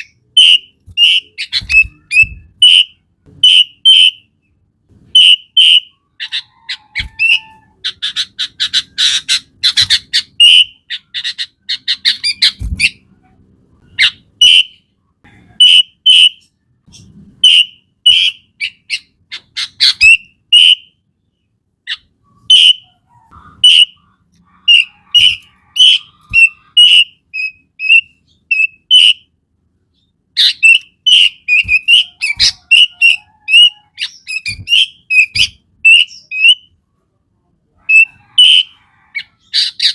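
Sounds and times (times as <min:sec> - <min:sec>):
bird whistling and chattering: 0:00.0 - 0:04.3, 0:05.1 - 0:13.0, 0:13.8 - 0:14.8, 0:15.6 - 0:21.0, 0:21.9 - 0:29.3, 0:30.0 - 0:36.7, 0:37.8 - 0:39.9.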